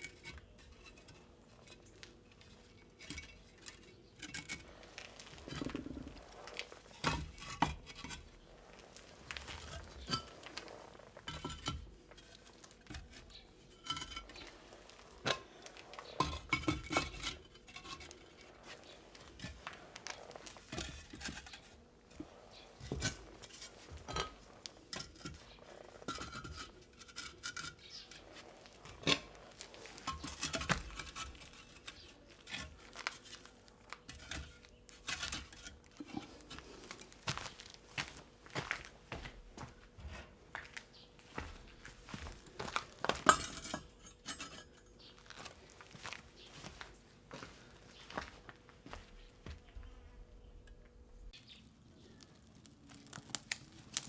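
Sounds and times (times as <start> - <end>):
hard objects clinking and scraping: 0.0 - 38.9, 41.4 - 46.2, 52.1 - 54.0.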